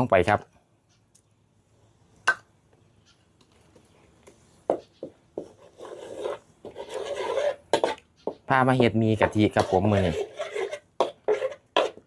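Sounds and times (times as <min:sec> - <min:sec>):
spatula scraping a wok: 0:05.4 - 0:12.0.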